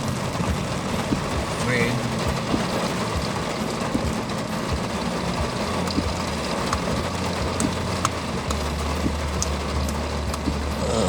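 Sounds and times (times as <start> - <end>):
tyre noise on wet road: 0.0 - 11.0
light ticks: 5.8 - 10.6
low drone: 7.6 - 11.0.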